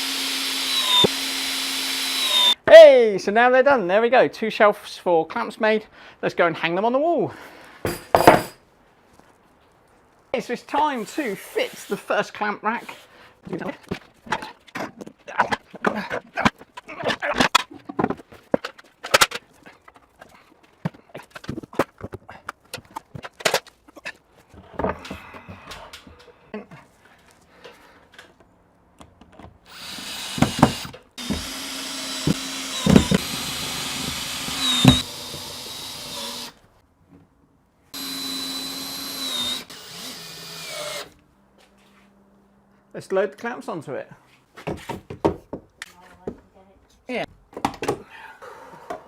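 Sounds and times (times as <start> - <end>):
power drill running: 0.0 - 2.6, 29.7 - 36.6, 38.0 - 41.1.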